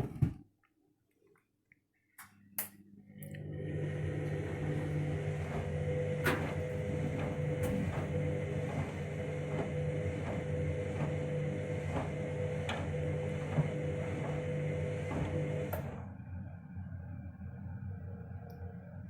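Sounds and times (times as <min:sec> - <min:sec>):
washing machine motor hum: 0:02.8 - 0:19.0.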